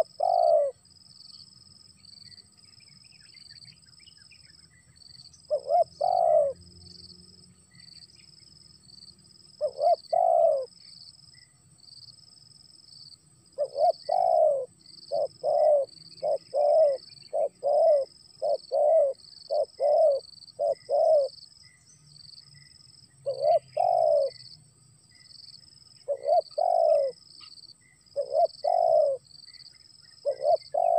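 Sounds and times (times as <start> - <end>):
dove cooing: 0.0 - 0.8, 5.5 - 6.6, 9.6 - 10.7, 13.6 - 21.4, 23.2 - 24.4, 26.1 - 27.5, 28.1 - 29.2, 30.2 - 30.9
insects pulsing: 0.0 - 30.9.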